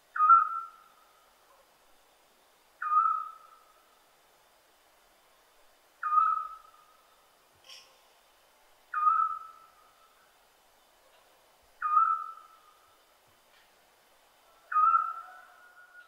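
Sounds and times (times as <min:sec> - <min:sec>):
owl whistled call: 0:00.2 - 0:00.9, 0:02.8 - 0:03.6, 0:06.0 - 0:06.8, 0:08.9 - 0:09.7, 0:11.8 - 0:12.7, 0:14.7 - 0:16.0.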